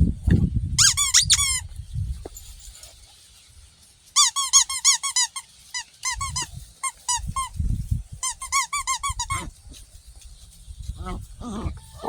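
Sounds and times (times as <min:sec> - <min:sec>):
puppies yelping: 0:11.0 - 0:12.0.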